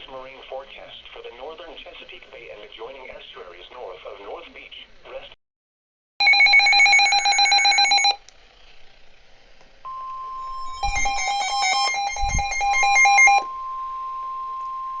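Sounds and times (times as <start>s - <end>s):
steady high alert tone: 9.9s - 15.0s
warbling digital data tones: 9.9s - 15.0s.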